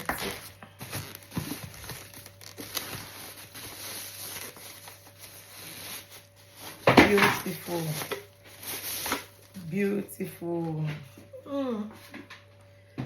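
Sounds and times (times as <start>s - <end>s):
packaging rustling: 0.0s - 9.6s.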